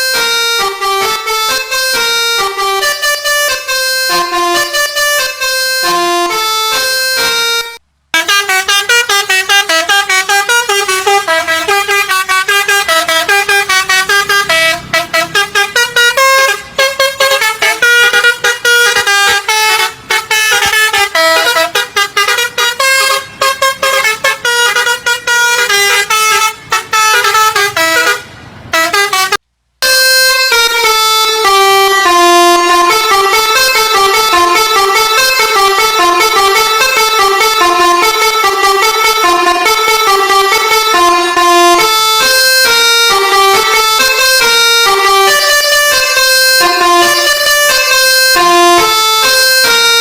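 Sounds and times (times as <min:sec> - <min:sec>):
multi-tone bus air horn melody: 0:00.0 - 0:50.0.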